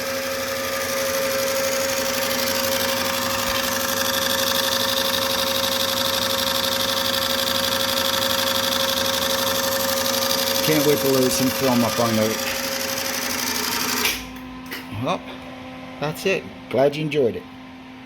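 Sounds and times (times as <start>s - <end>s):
film projector motor whirring: 0.0s - 14.4s.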